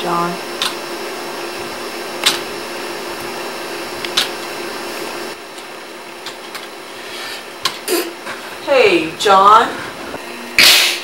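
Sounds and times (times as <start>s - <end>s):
steady hum: 0.0s - 11.0s.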